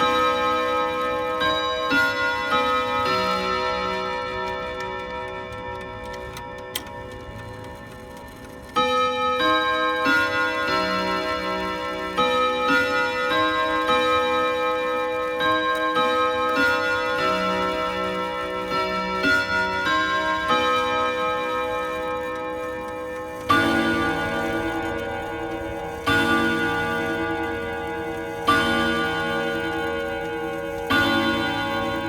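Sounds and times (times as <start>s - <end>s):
clock chime melody: 0.0s - 32.0s
clock ticking: 12.4s - 32.0s.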